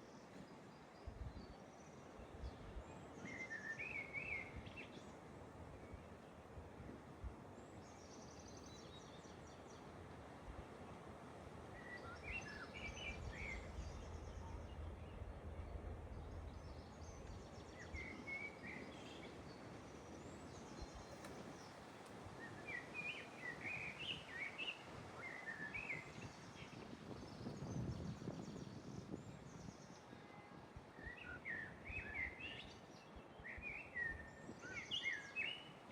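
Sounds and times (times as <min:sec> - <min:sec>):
low background rumble: 0:10.1 - 0:21.7.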